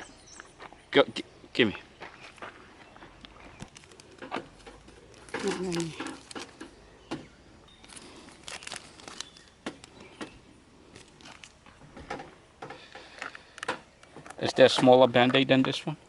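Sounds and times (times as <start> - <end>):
bandage packaging rustling: 3.6 - 6.7, 7.7 - 10.2, 10.9 - 11.6.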